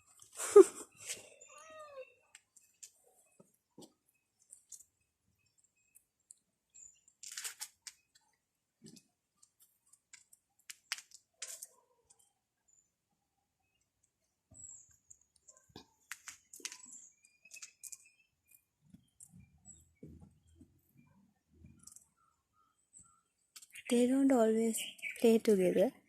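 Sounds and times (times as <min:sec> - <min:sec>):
faint bird chirps: 0:00.4 - 0:09.0, 0:11.7 - 0:25.8
faint clicks and rustling: 0:02.3 - 0:12.3.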